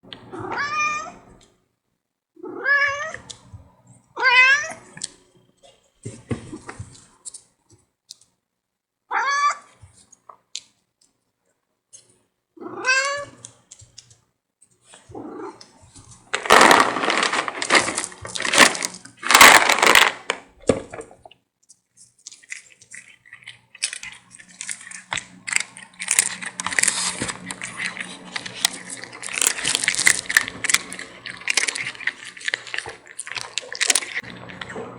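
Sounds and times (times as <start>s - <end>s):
kitten meowing: 0.3s - 1.2s, 12.6s - 13.4s
rustling with small clicks: 13.4s - 34.7s.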